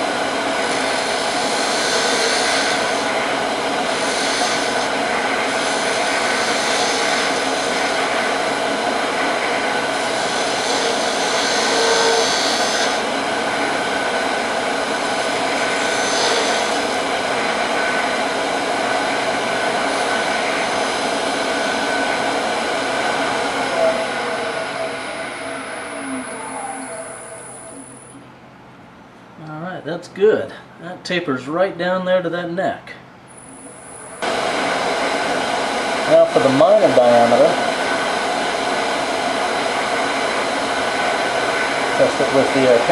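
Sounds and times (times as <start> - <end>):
lathe motor whine: 0.0 - 28.3, 33.4 - 42.9
gouge cutting wood hiss: 0.7 - 3.1, 3.8 - 8.2, 10.0 - 13.1, 15.5 - 17.0.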